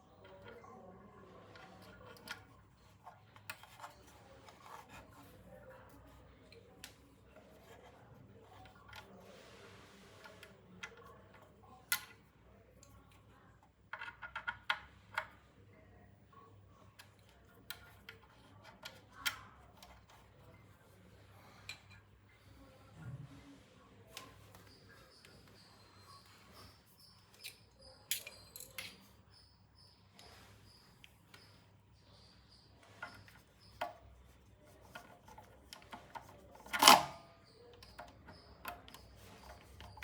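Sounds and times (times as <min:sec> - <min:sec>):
small tools clicking and tapping: 0:01.6 - 0:05.2, 0:13.9 - 0:15.4, 0:17.0 - 0:20.4, 0:24.2 - 0:40.0.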